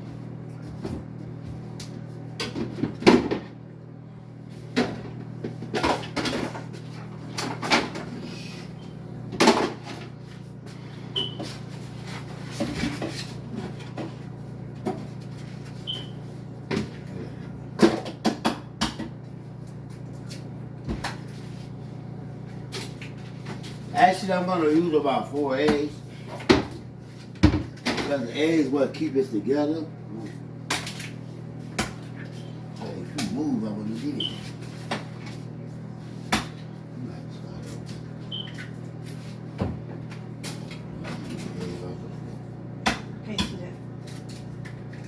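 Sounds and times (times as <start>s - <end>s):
steady low hum: 0.0s - 45.0s
kitchen knocks and clunks: 26.4s - 26.8s, 27.4s - 28.2s, 39.6s - 39.9s.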